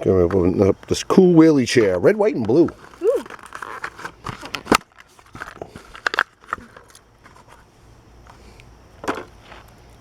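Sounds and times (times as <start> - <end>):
plastic crinkling and crackling: 1.8 - 7.7
plastic packaging snapping: 2.8 - 7.0.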